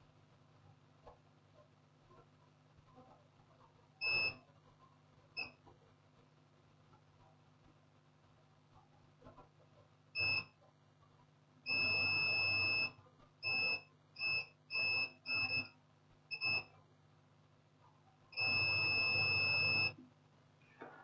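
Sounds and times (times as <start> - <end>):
multimeter continuity buzzer beeping: 4.0 - 4.4, 10.2 - 10.6, 11.7 - 16.7, 18.4 - 20.0.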